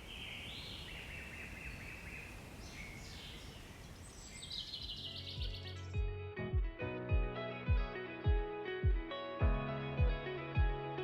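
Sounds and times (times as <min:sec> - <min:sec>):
outdoor background hiss: 0:00.0 - 0:05.7
birds chirping: 0:00.0 - 0:06.1
music with plucked guitar and beat: 0:05.3 - 0:11.0.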